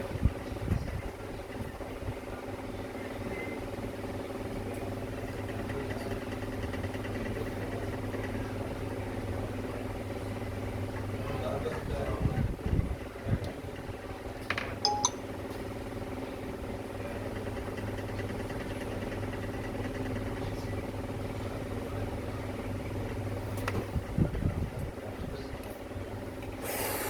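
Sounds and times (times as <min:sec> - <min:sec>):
tools clinking on workbench: 0:14.5 - 0:15.2.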